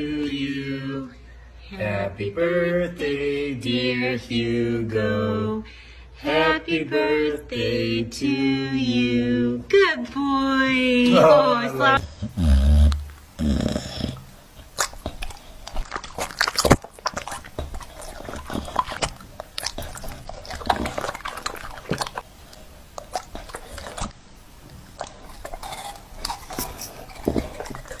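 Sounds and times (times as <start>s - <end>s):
dog chewing and eating: 12.0s - 28.0s.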